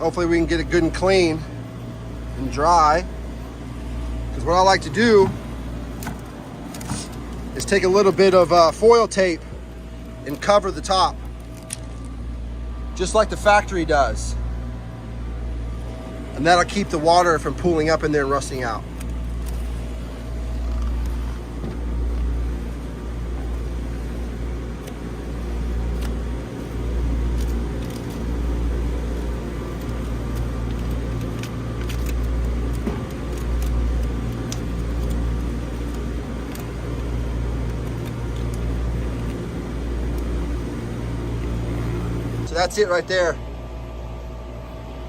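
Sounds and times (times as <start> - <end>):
mechanical hum with low rumble: 0.0 - 45.0
foil tape crinkling: 10.0 - 12.2, 23.5 - 40.8.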